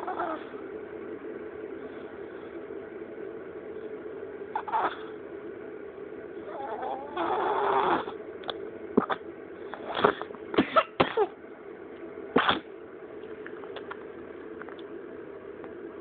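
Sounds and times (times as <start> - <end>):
steady hum: 0.0 - 16.0
person coughing: 10.0 - 11.4.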